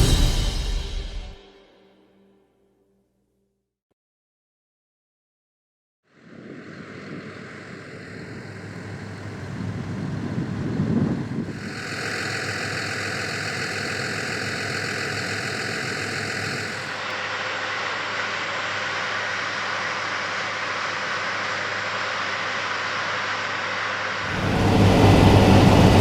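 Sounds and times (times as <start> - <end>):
combine harvester engine drone: 6.4 - 26.0.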